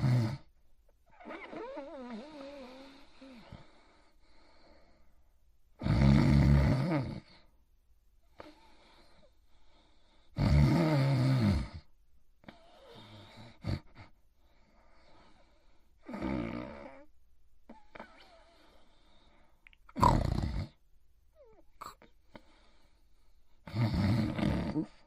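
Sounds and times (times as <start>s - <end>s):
loud snores: 0.0s - 0.5s, 1.1s - 3.9s, 5.8s - 7.5s, 10.3s - 11.9s, 12.5s - 14.1s, 16.0s - 17.1s, 20.0s - 20.8s, 23.6s - 25.0s
faint breaths: 1.1s - 5.5s, 8.2s - 10.4s, 11.8s - 16.2s, 17.7s - 19.8s, 21.4s - 25.0s.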